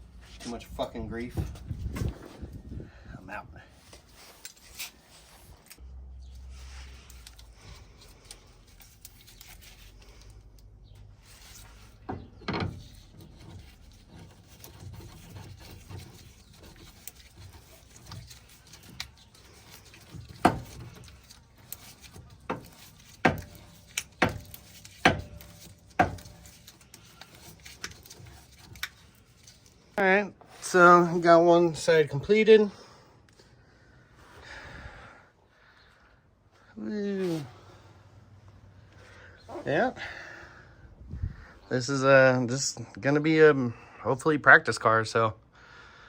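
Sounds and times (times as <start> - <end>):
quiet rubbing and handling: 0.0 - 34.4, 35.8 - 40.0
tools knocking on steel parts: 22.5 - 26.4.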